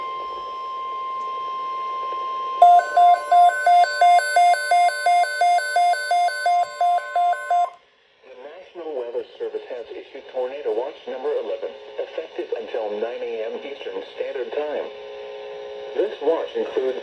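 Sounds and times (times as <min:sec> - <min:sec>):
rapid two-pitch beeping: 0:02.6 - 0:07.7
steady high alarm tone: 0:02.6 - 0:07.8.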